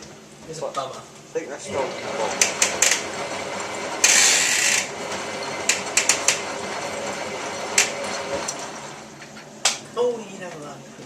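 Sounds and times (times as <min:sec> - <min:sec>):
washing machine running: 0:01.5 - 0:10.3
sharp clicks and knocks: 0:05.7 - 0:06.4.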